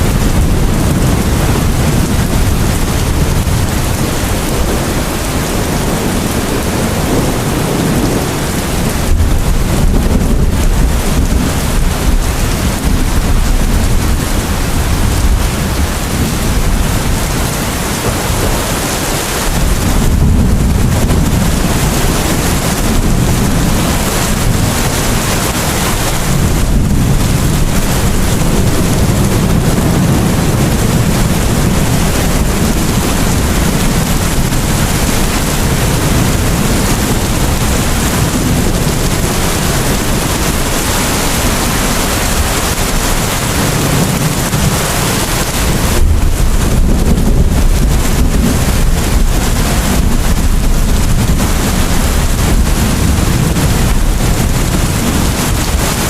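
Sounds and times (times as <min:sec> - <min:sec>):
low rumble: 0:00.0 - 0:44.6
rain falling: 0:00.0 - 0:56.0.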